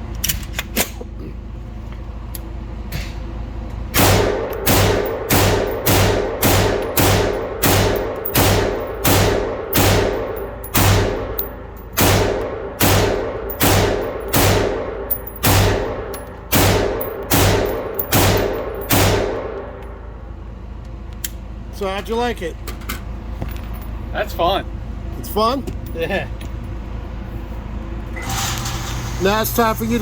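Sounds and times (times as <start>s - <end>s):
pistol shots echoing: 4.0s - 11.4s, 12.0s - 19.7s.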